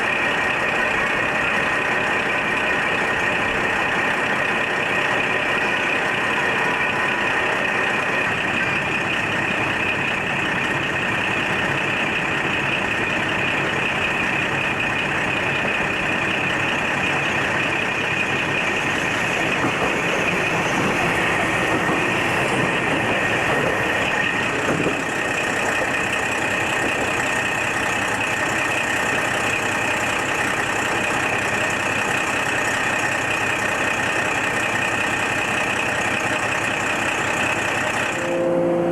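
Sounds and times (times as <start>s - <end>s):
train rumble and rushing: 0.0s - 38.9s
thin high whine: 38.2s - 38.9s.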